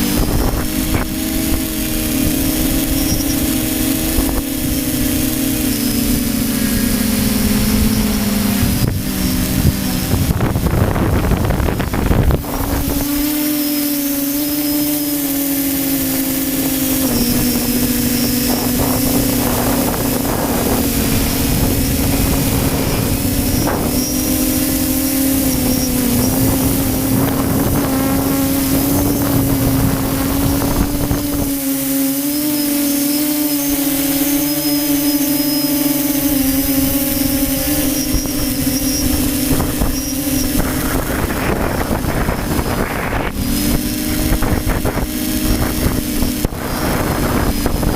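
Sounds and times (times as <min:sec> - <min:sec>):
model aircraft motor droning: 0:00.0 - 0:47.9
wind rumbling on microphone: 0:00.0 - 0:47.9.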